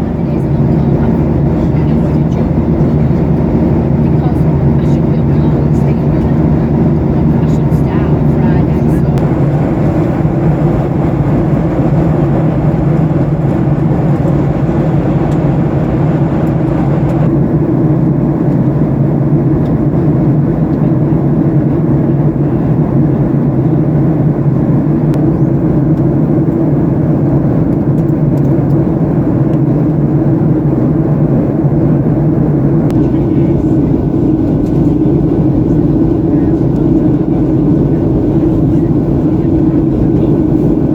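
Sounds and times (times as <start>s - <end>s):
jet engines droning: 0.0s - 40.9s
air rushing past fuselage: 9.2s - 17.3s.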